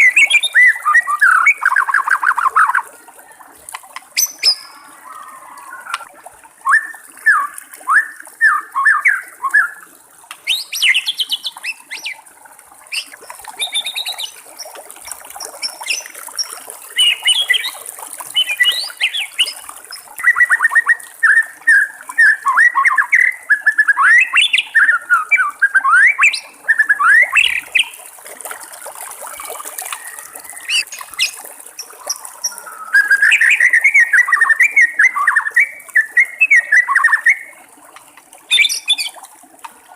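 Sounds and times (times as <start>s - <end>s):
bird singing whistled phrases: 0.0s - 2.8s, 4.2s - 6.0s, 6.6s - 9.8s, 10.4s - 12.2s, 12.9s - 14.7s, 17.0s - 17.8s, 18.4s - 27.9s, 29.9s - 37.5s, 38.5s - 39.2s
water trickling: 0.0s - 39.9s.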